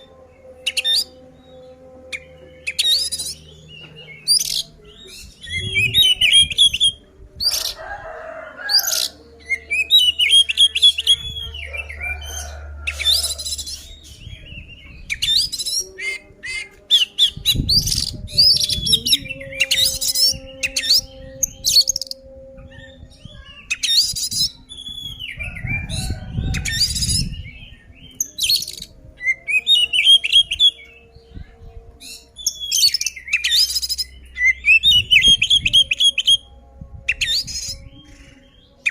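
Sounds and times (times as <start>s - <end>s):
low rumble: 11.1s - 15.6s.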